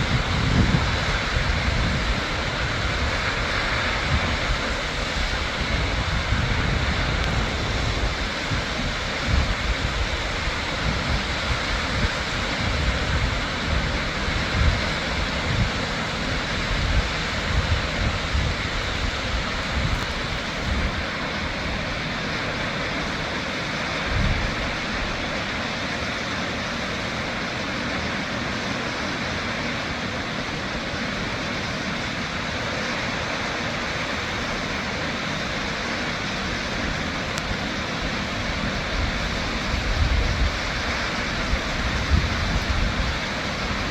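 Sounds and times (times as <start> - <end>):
wind buffeting microphone: 0.0 - 23.3, 24.0 - 25.5, 34.0 - 43.9
waterfall rushing: 0.0 - 43.9.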